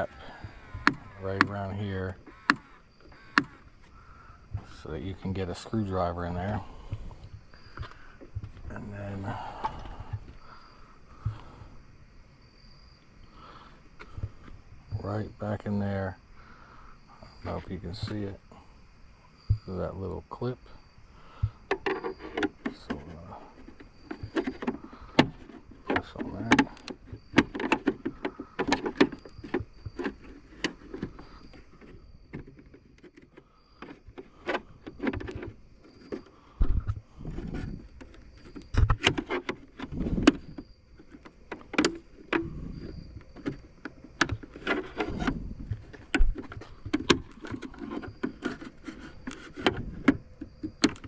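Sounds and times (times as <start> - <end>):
heavy thumps: 6.3 - 11.7.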